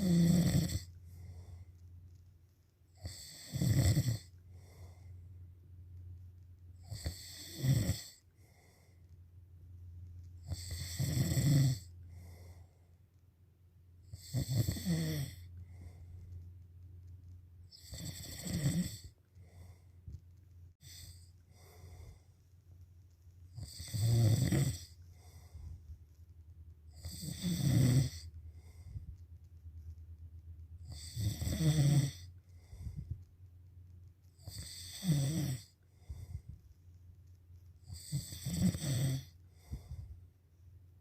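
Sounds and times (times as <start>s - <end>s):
loud snoring: 0.0s - 0.9s, 3.0s - 4.3s, 6.8s - 8.2s, 10.4s - 11.9s, 14.1s - 15.5s, 17.7s - 19.1s, 20.8s - 21.3s, 23.6s - 25.0s, 27.0s - 28.3s, 30.8s - 32.3s, 34.4s - 35.8s, 37.9s - 39.8s
faint breaths: 0.8s - 3.4s, 4.2s - 5.5s, 8.0s - 9.4s, 11.8s - 13.2s, 15.3s - 16.7s, 18.9s - 24.0s, 24.7s - 26.3s, 28.1s - 30.0s, 32.1s - 33.5s, 35.6s - 38.5s, 39.2s - 40.8s.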